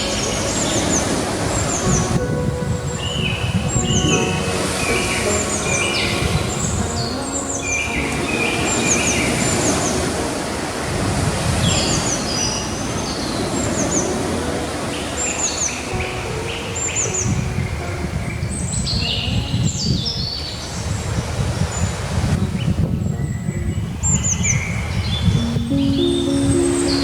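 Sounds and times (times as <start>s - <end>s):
birds chirping: 0.0s - 10.9s
sea waves washing onto beach: 0.0s - 23.0s, 24.0s - 27.0s.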